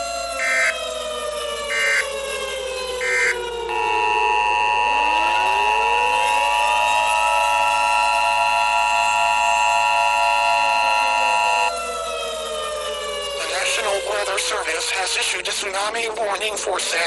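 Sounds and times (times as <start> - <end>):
warning siren: 0.0 - 17.0
two-tone attention signal: 3.0 - 5.9.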